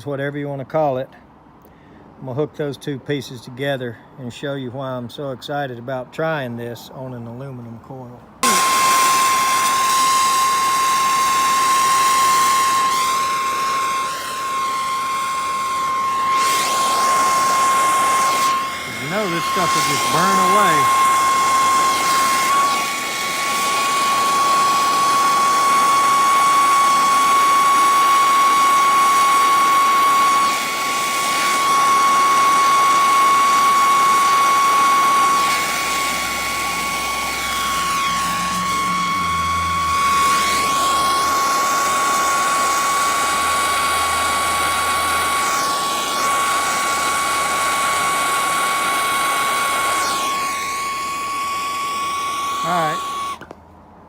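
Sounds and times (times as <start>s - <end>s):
high whistle: 8.4s - 44.0s, 44.8s - 53.4s
gas torch flame hissing: 8.4s - 53.4s.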